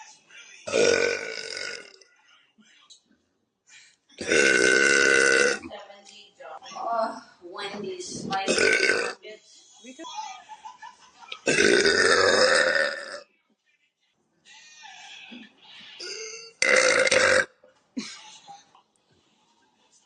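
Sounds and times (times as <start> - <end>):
woman burping: 0.7 - 2.0, 4.2 - 5.7, 8.3 - 9.2, 11.4 - 13.2, 16.0 - 17.5.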